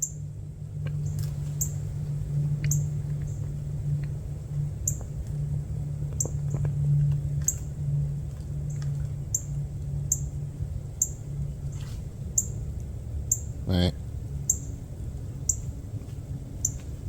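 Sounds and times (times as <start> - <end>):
steady low hum: 0.0 - 17.0
small bird chirping: 0.9 - 1.9, 2.5 - 3.5, 4.8 - 5.1, 10.1 - 10.3, 11.0 - 12.6, 13.3 - 13.5, 14.4 - 14.8, 16.6 - 16.9.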